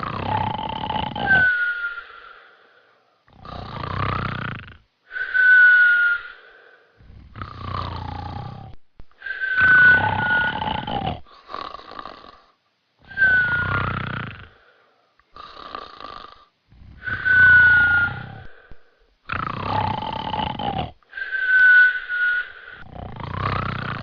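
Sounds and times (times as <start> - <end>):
cartoon snoring: 0.0 - 1.7, 3.3 - 4.9, 7.0 - 8.8, 9.6 - 14.6, 15.3 - 18.7, 19.3 - 21.0, 22.7 - 24.0.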